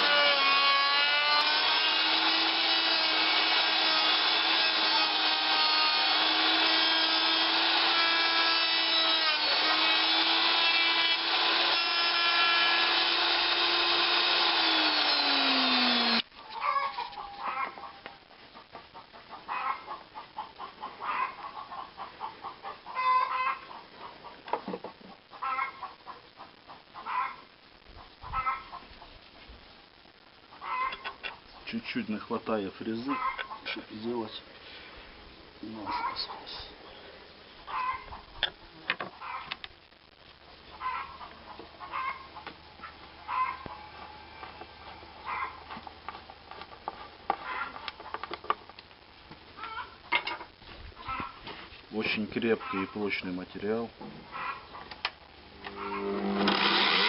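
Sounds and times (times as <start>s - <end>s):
hens clucking: 16.4s - 27.4s, 32.9s - 34.2s, 37.6s - 38.4s, 40.7s - 46.2s, 47.0s - 48.3s, 51.0s - 51.5s, 52.4s - 55.1s, 55.7s - 56.2s
short animal calls: 55.7s - 56.2s.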